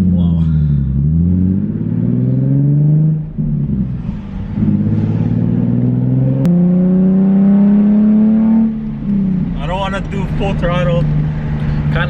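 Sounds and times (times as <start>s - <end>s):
car engine accelerating: 0.0s - 12.0s.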